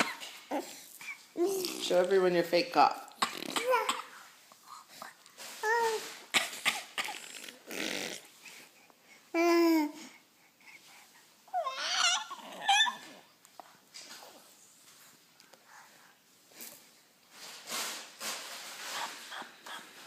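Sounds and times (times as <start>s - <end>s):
child fake coughing: 0.0s - 0.4s, 3.2s - 4.2s, 6.3s - 7.4s
child babbling: 1.4s - 1.8s
child squealing: 11.6s - 13.0s.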